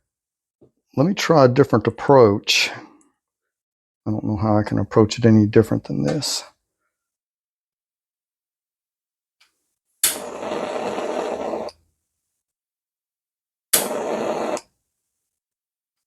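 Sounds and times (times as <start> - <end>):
hiss of burning gas: 10.1 - 11.7, 13.8 - 14.7.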